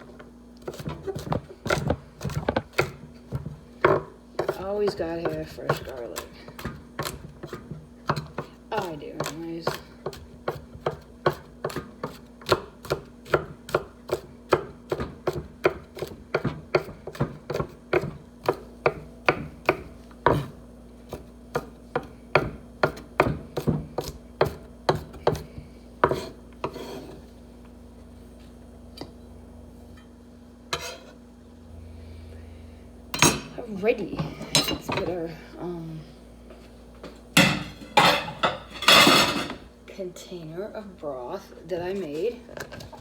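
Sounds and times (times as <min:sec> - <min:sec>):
knife chopping on cutting board: 0:00.6 - 0:27.2.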